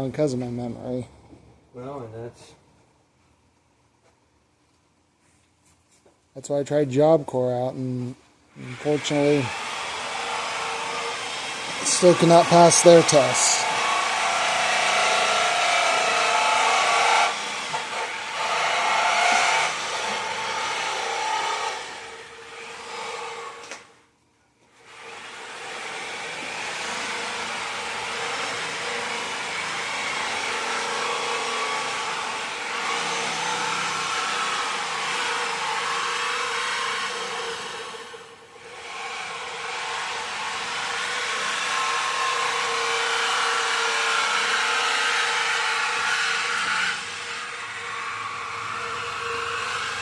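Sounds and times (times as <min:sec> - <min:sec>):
whirring machine: 0:08.5 - 0:24.0, 0:24.8 - 0:50.0.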